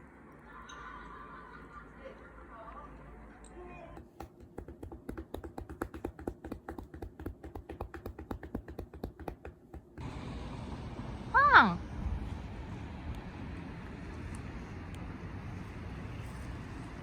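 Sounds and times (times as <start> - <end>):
fast small sharp clicks: 4.0 - 10.0.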